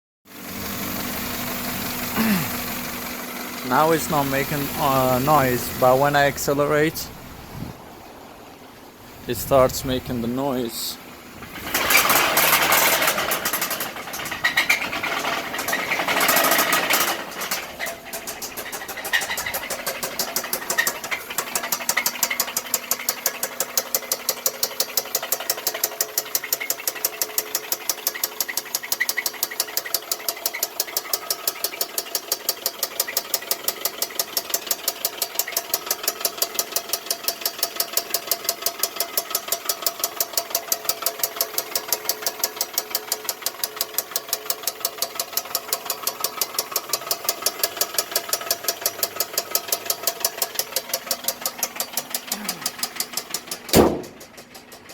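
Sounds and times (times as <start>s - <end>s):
car engine revving: 0.4s - 6.6s, 11.0s - 23.0s
fast even engine knocking: 11.4s - 54.9s.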